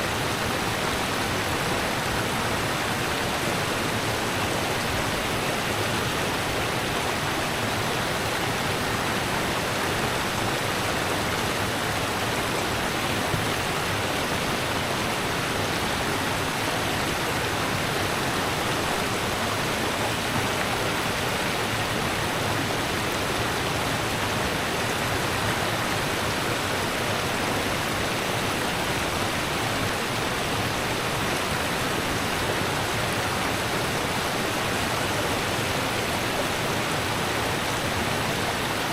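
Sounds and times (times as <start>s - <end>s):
rushing river water: 0.0s - 38.9s.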